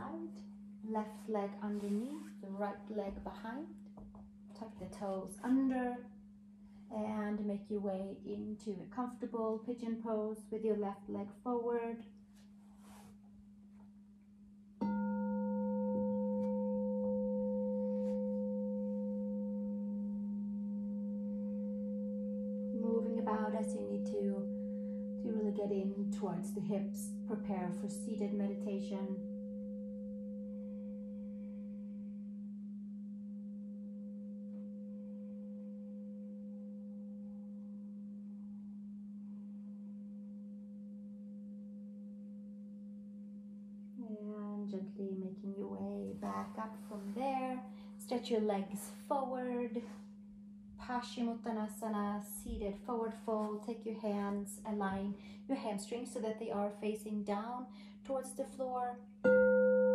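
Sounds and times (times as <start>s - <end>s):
crystal singing bowl ringing: 14.8s - 44.0s, 59.1s - 59.9s.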